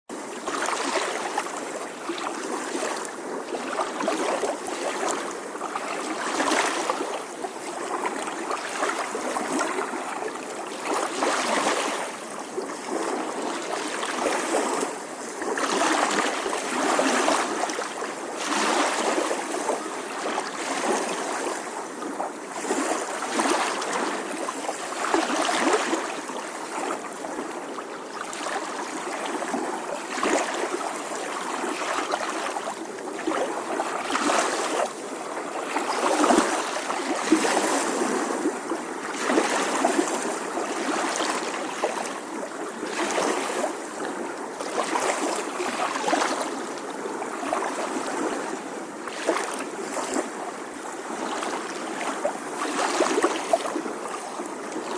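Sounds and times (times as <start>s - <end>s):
small waves lapping on shore: 0.1s - 54.9s.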